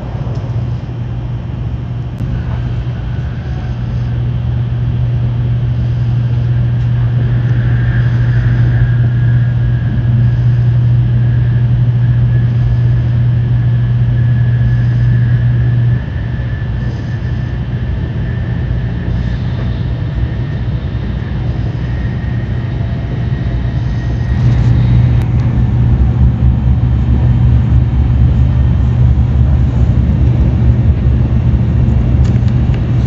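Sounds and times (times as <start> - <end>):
high whine: 0.0 - 33.0
train running hum: 0.0 - 33.0.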